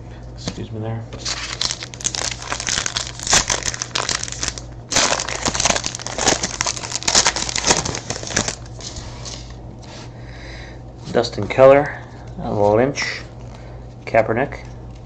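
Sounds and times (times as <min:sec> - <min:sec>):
wrapper tearing and crinkling: 0:01.2 - 0:09.4.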